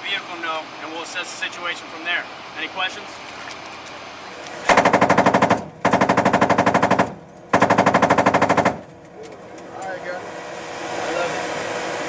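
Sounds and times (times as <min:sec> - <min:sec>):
machine gun firing bursts: 0:04.7 - 0:08.9.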